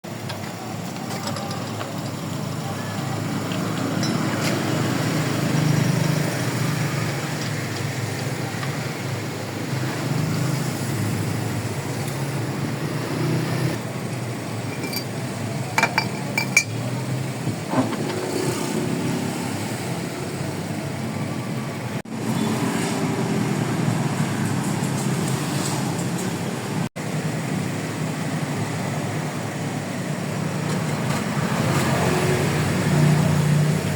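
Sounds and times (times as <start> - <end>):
road traffic noise: 0.0 - 33.9
sharp metallic clinks: 14.7 - 15.1.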